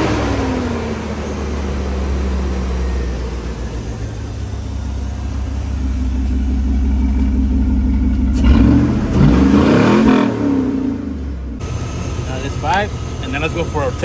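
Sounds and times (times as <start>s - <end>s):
pickup engine idling and revving: 0.0s - 14.0s.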